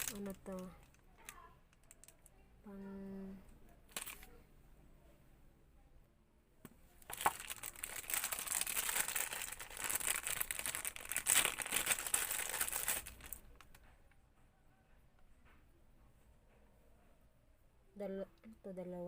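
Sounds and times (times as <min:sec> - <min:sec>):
packaging crinkling: 0:00.0 - 0:02.3, 0:03.9 - 0:04.3, 0:07.0 - 0:13.8.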